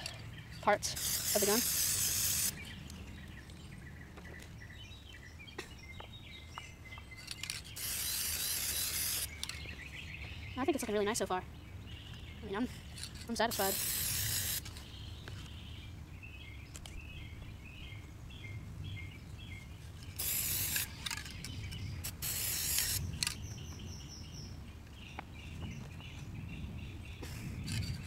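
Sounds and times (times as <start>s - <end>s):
small birds chirping: 0.0s - 28.0s
spray paint can spraying: 0.8s - 2.6s, 7.3s - 9.6s, 13.4s - 14.8s, 20.1s - 21.4s, 22.0s - 23.4s.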